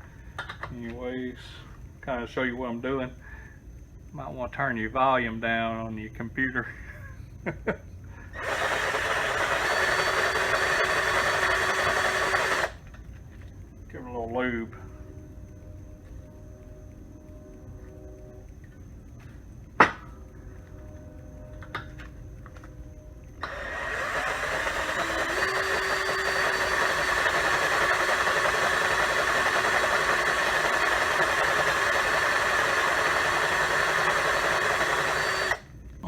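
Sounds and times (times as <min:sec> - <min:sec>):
drill bit squealing: 0:08.4 - 0:12.8, 0:23.4 - 0:35.6
electric drill grinding metal: 0:08.4 - 0:12.8, 0:23.4 - 0:35.7.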